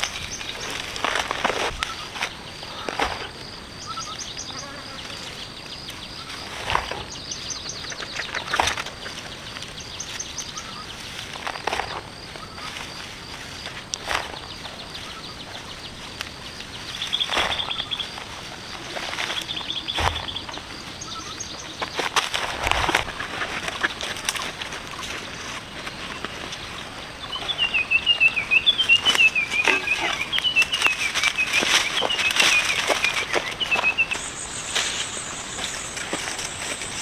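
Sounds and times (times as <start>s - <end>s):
rustling or scraping noises: 0.0s - 4.0s, 4.6s - 37.0s
birds chirping: 0.0s - 37.0s
insects chirping: 0.0s - 37.0s
bird trills: 27.2s - 37.0s.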